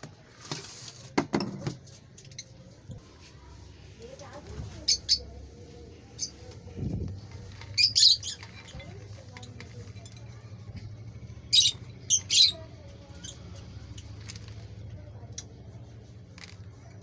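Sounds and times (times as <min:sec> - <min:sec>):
parrots squawking and chirping: 0:04.7 - 0:05.3, 0:07.5 - 0:09.5, 0:11.4 - 0:14.5.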